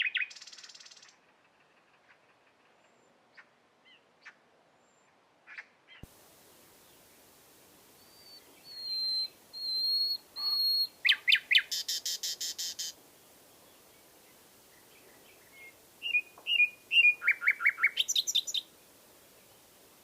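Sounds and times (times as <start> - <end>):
nightingale singing: 0.0 - 1.3, 7.8 - 20.0
faint steady hiss: 0.0 - 20.0.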